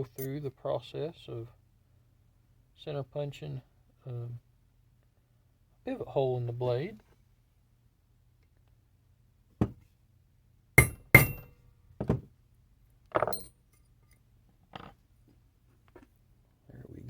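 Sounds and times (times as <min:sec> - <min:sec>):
metallic taps of punch on steel: 0:10.8 - 0:11.5.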